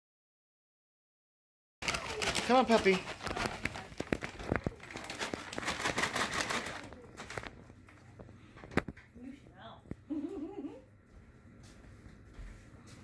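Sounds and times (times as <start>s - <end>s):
rustling and crinkling: 1.8s - 10.0s.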